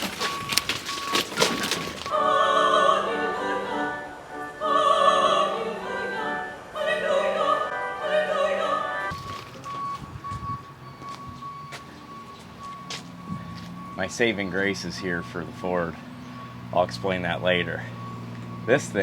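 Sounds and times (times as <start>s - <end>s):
operatic high voice singing: 2.1s - 9.1s.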